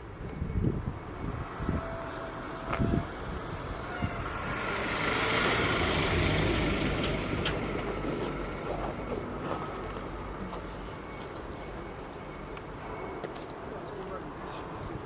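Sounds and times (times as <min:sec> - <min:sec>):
vehicle passing by: 0:01.2 - 0:10.3.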